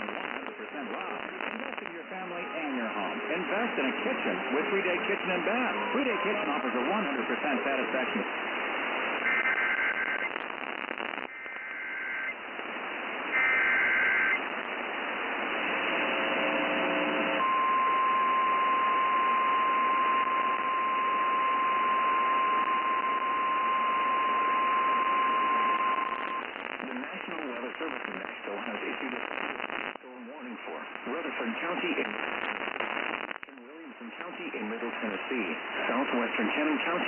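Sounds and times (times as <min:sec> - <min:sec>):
radio hiss: 0:00.0 - 0:37.0
warbling data tones: 0:13.3 - 0:14.4.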